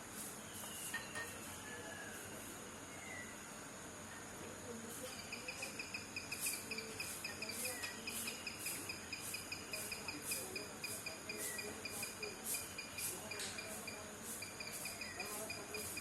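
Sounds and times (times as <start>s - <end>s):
insects trilling: 4.8s - 16.0s
insect pulsing chirps: 5.0s - 16.0s.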